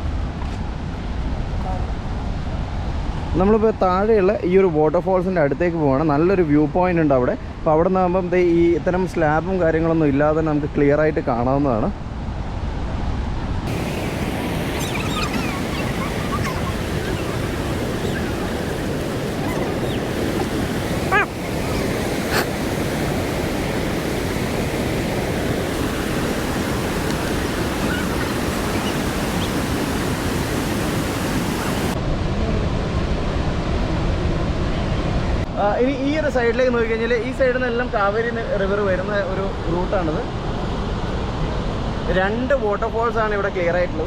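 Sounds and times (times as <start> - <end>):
waterfall roaring: 13.7 - 32.0.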